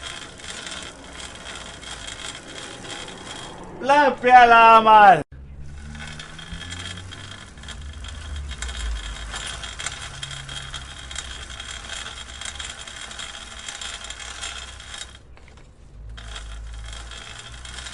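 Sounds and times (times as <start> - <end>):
low rumble: 0.0 - 13.6
bicycle chain clicking and rattling: 0.0 - 17.9.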